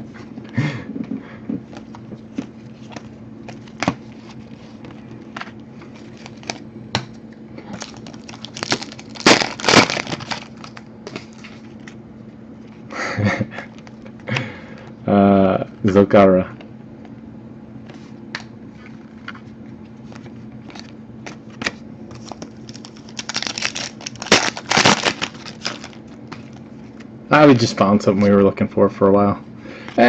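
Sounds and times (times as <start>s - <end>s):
faint steady hum: 0.0s - 30.0s
foil wrappers crinkling: 2.8s - 6.6s, 7.6s - 11.8s, 21.6s - 27.0s.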